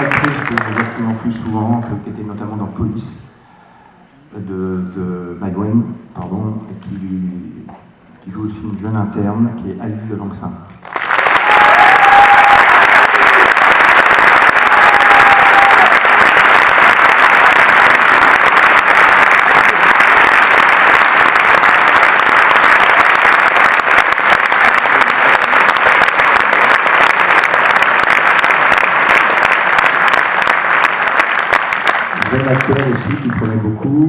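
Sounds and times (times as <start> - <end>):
audience applauding: 0.0 - 1.6, 10.8 - 34.0
whistle or cheer: 11.4 - 13.5.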